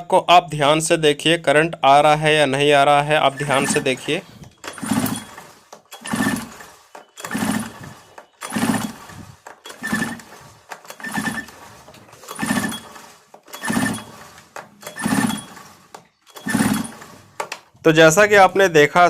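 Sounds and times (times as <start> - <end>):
recoil starter pulls: 3.1 - 17.8
engine spinning over whirr: 4.6 - 11.7, 12.3 - 15.7.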